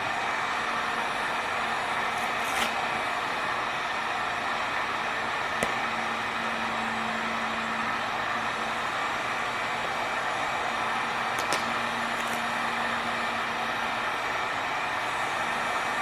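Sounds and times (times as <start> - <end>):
heat gun blowing: 0.0 - 16.0.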